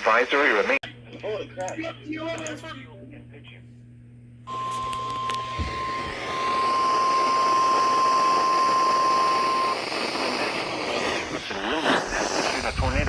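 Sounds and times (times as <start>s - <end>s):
radio static hiss: 0.0s - 0.9s, 4.5s - 13.0s
steady alarm tone: 4.5s - 12.6s.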